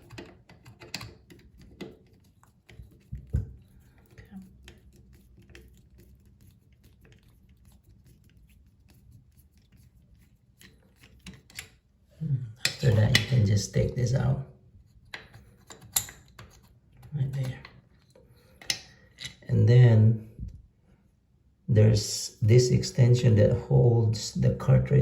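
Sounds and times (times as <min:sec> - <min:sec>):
screwdriver metal clicks and scrapes: 0:00.0 - 0:05.7, 0:10.6 - 0:11.8, 0:15.0 - 0:17.1.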